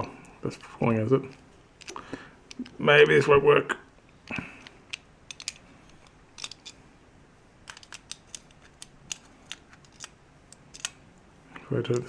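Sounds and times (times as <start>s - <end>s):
metallic lock clicks: 4.6s - 6.8s, 7.6s - 11.0s.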